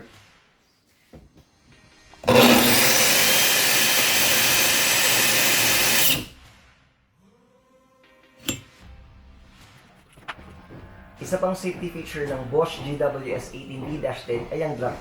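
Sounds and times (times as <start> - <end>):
angle grinder grinding: 2.2 - 6.3.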